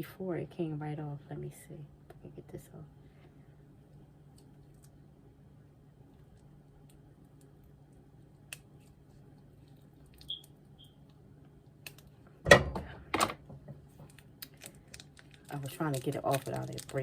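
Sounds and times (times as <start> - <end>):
faint steady hum: 0.0 - 17.0
plastic crinkling: 13.9 - 17.0.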